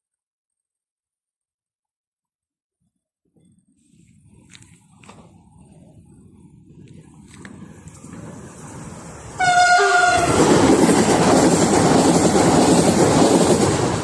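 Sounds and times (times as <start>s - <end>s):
train rumble and rattle: 4.3s - 14.0s
train horn blast: 9.4s - 10.6s.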